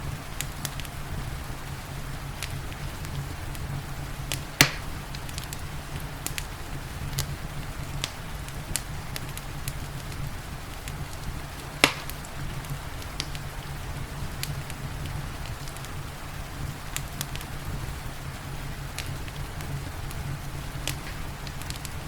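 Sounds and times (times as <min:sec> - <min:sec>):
soft rain hiss: 0:00.0 - 0:22.0
wood fire crackling: 0:00.0 - 0:22.0
loud fire pops: 0:00.1 - 0:22.0.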